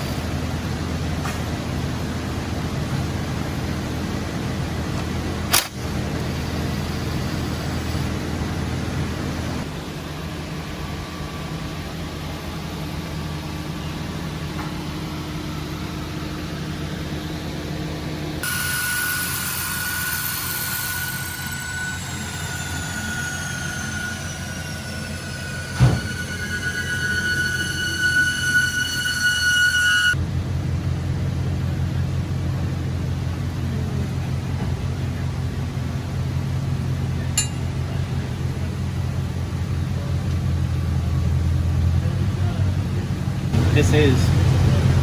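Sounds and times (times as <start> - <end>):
workshop background hum: 0.0 - 45.0
sharp click: 5.5 - 5.8.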